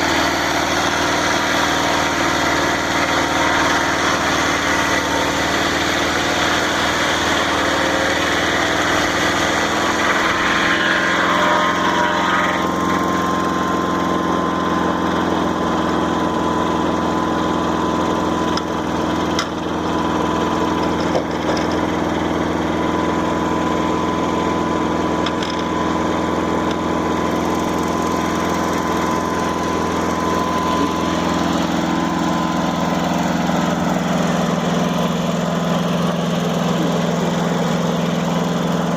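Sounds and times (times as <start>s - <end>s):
gasoline engine running: 0.0s - 38.9s.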